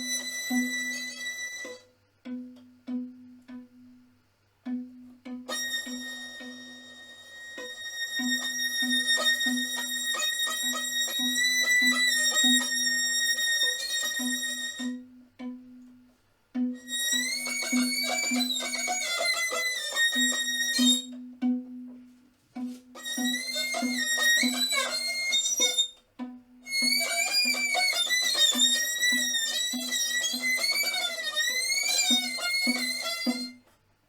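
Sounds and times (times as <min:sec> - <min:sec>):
violin-like lead holding high notes: 0:00.0 - 0:01.8, 0:16.9 - 0:21.1, 0:23.0 - 0:25.9, 0:26.7 - 0:33.6.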